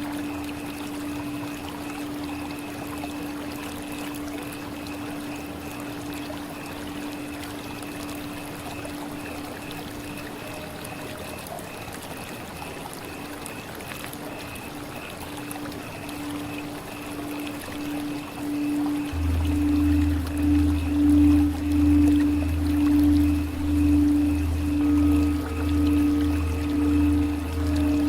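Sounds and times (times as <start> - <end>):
running water trickle: 0.0 - 28.0
faint high tone: 17.1 - 28.0
low hum: 17.1 - 28.0.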